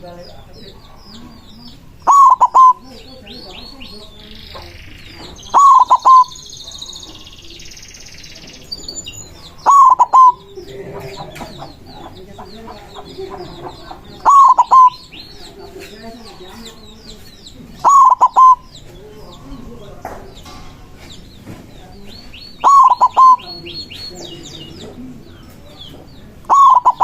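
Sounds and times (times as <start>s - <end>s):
small birds chirping faintly: 0.0s - 27.0s
dove cooing: 0.6s - 3.8s, 5.2s - 7.2s, 8.4s - 19.0s, 22.6s - 27.0s.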